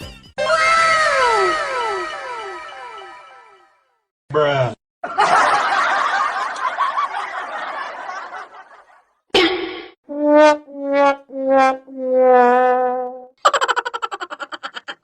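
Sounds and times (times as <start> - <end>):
sad trombone sound effect: 10.1 - 13.3.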